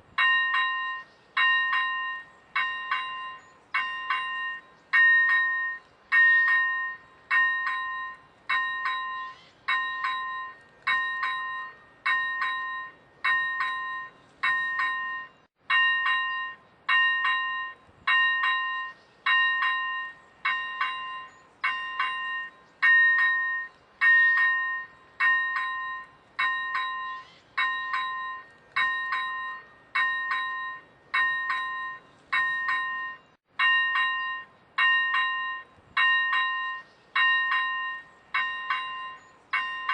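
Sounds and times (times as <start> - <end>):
level crossing bell ringing: 0.2 - 39.9.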